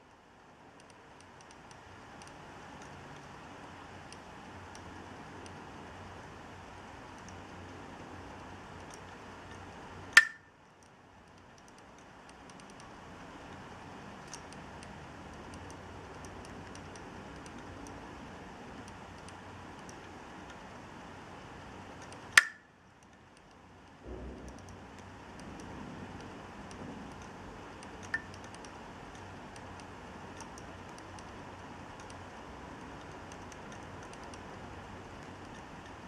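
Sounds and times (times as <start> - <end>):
hard disk hum: 0.0 - 36.0
faint small ticks: 0.7 - 3.3, 7.1 - 20.6, 22.0 - 36.0.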